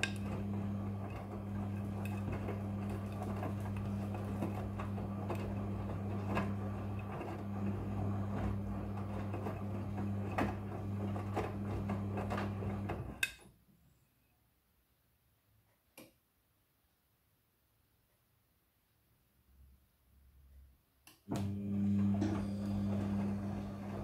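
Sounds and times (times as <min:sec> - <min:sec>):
washing machine motor hum: 0:00.0 - 0:13.2, 0:21.3 - 0:24.0.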